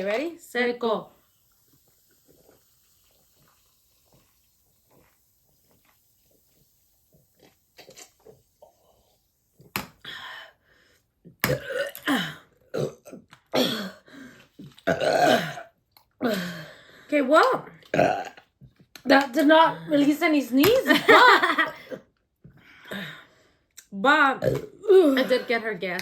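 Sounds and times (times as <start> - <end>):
faint gulping: 1.4 - 9.7, 11.2 - 16.2, 17.7 - 18.9
loud burps: 11.4 - 14.0, 14.7 - 16.4, 17.9 - 18.5, 24.4 - 25.5.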